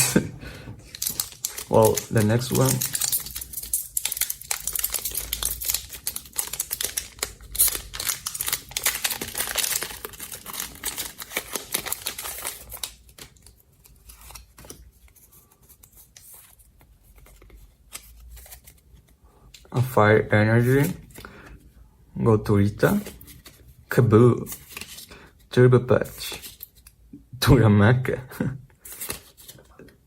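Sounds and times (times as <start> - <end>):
foil wrapper crinkling and tearing: 0.8 - 14.6.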